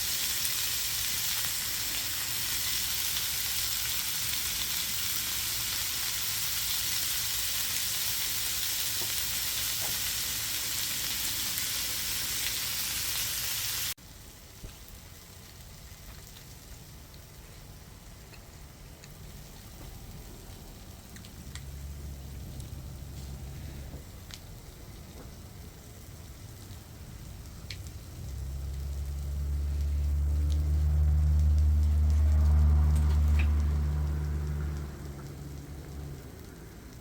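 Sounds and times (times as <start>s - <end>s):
food sizzling in a pan: 0.0s - 37.0s
low rumble: 26.6s - 37.0s.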